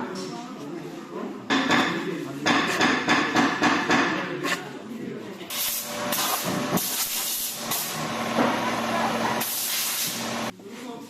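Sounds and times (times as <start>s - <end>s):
compressed air hissing bursts: 5.5s - 8.0s, 9.4s - 10.5s.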